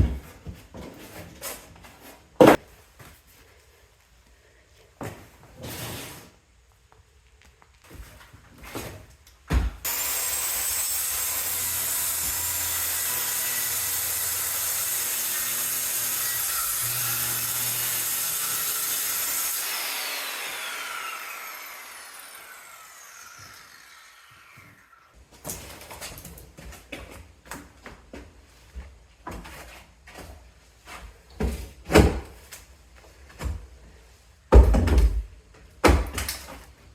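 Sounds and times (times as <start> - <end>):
power saw cutting wood: 9.8 - 25.2.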